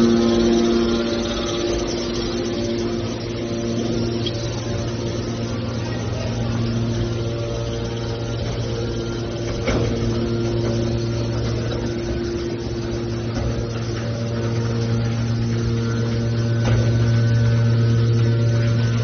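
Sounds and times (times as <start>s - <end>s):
hydraulic power unit humming: 0.0s - 19.0s.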